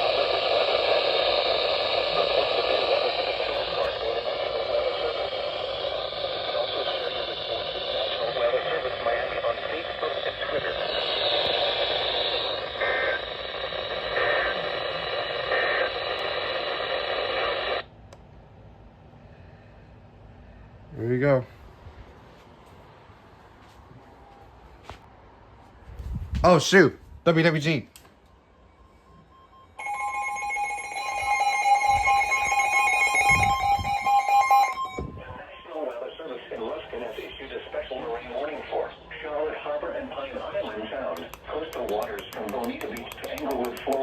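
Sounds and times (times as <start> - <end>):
radio noise hiss: 0.0 - 17.9, 33.2 - 44.0
data tone bursts: 29.6 - 35.7.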